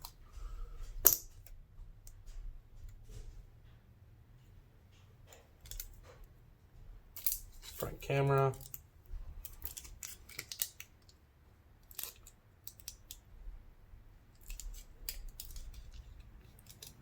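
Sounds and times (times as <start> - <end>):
plastic phone parts clicking: 5.3 - 6.2, 7.2 - 11.2, 11.8 - 13.3, 14.3 - 17.0.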